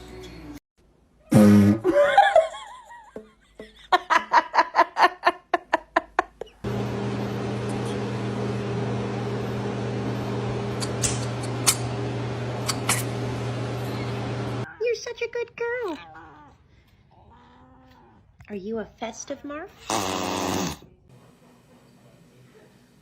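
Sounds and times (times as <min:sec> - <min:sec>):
person laughing: 0:01.4 - 0:06.6.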